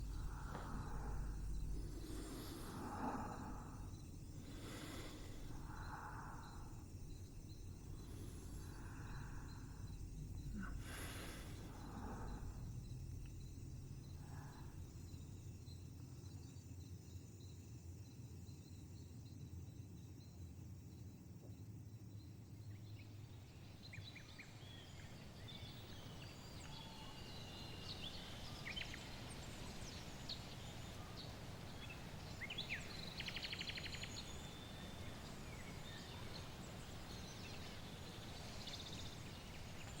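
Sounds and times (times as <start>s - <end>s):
low background rumble: 0.0s - 16.8s
small birds chirping: 0.0s - 20.4s, 21.9s - 40.0s.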